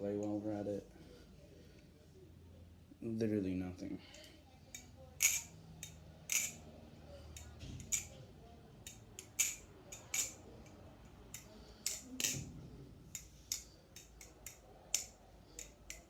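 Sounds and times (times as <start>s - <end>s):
balisong handles clacking: 4.2s - 6.7s, 7.3s - 8.2s, 8.8s - 12.5s, 13.1s - 16.0s.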